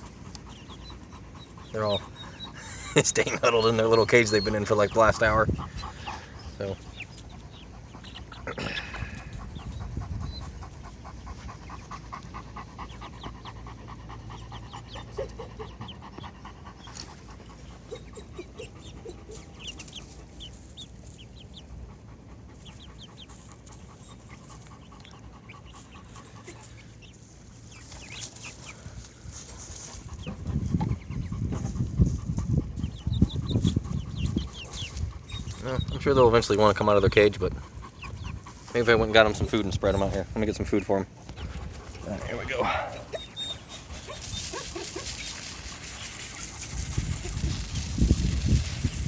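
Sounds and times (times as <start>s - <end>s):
chickens clucking and peeping: 0.0s - 49.0s.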